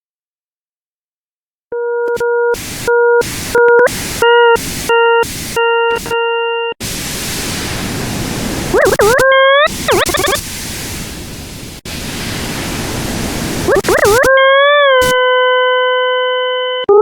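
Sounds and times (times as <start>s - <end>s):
steady buzzy electronic tone: 2.0s - 6.2s, 8.7s - 10.4s, 13.7s - 17.0s
loud noise hiss: 2.6s - 6.1s, 6.8s - 14.3s
wobbling electronic tones: 8.7s - 10.4s, 13.7s - 17.0s.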